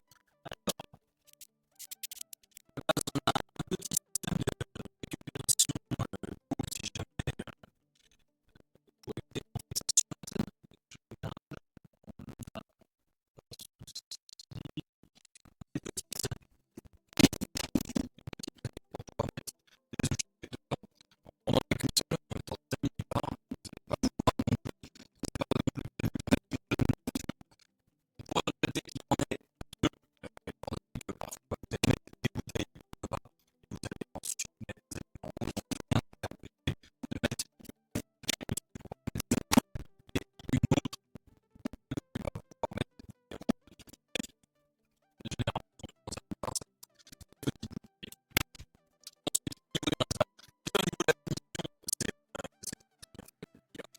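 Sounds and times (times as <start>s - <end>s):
music of short clicks and hits: 0.1s - 4.4s.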